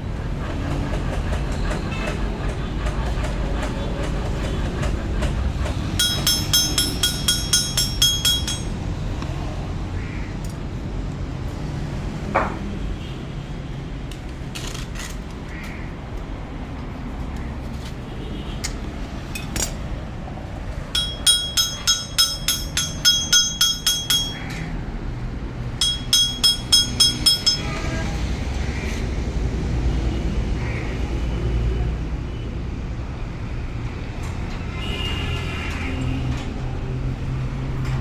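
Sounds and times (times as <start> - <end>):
rapid metallic clinking: 6.0 - 8.9, 20.9 - 24.6, 25.8 - 28.1.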